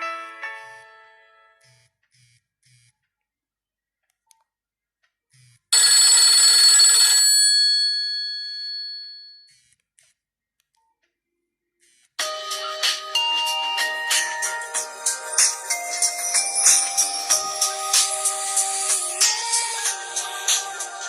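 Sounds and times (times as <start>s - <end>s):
bell-like ringtone chime: 5.8s - 9.5s, 12.2s - 21.0s.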